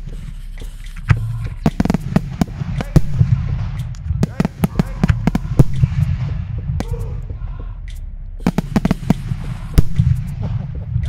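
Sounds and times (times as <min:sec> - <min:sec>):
low rumble: 0:00.0 - 0:11.0
fireworks bangs and cracks: 0:01.6 - 0:06.9, 0:08.4 - 0:11.0.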